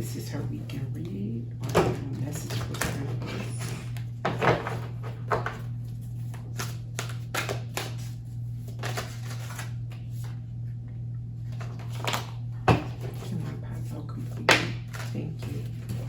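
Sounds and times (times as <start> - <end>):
steady low hum: 0.0 - 16.0
cards being shuffled: 2.2 - 10.4, 13.0 - 16.0.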